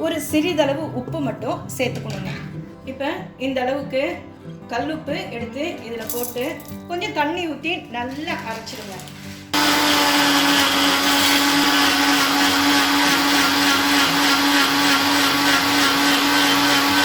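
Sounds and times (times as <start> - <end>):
mixer grinder whirring: 9.6 - 17.0.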